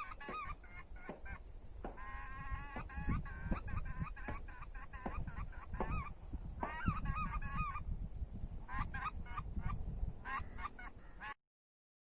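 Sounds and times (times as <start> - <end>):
goose call honks: 0.0 - 7.8
low wind rumble: 0.0 - 11.4.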